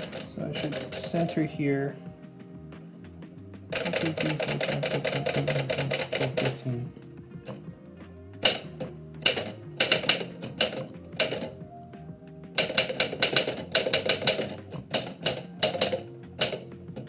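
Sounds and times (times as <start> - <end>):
typewriter keys striking: 0.0 - 1.6, 3.7 - 7.8, 8.4 - 11.7, 12.6 - 17.0
soft background music: 0.0 - 17.0.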